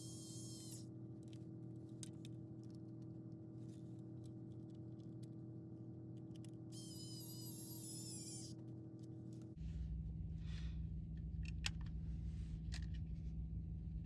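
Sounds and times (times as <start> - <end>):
high-pitched whirring tone: 0.0 - 0.8, 6.8 - 8.6
low electrical hum: 0.0 - 14.0.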